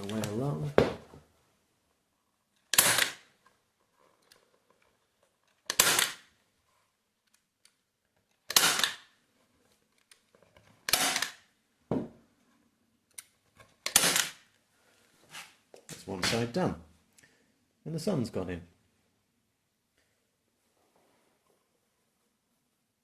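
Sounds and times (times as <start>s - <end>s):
staple gun firing: 2.7s - 3.2s, 5.7s - 6.2s, 8.5s - 9.0s, 10.9s - 11.4s, 13.9s - 14.4s.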